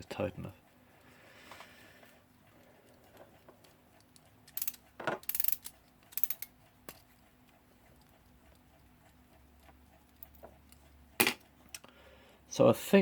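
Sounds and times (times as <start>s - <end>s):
small tools clicking on metal: 4.0s - 7.0s.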